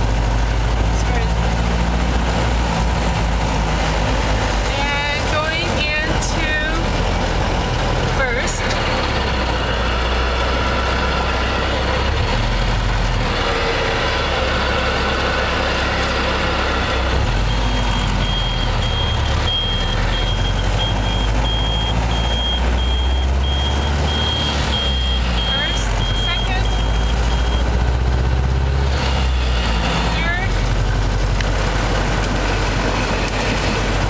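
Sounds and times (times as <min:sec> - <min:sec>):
high-pitched beep: 0:16.8 - 0:27.7.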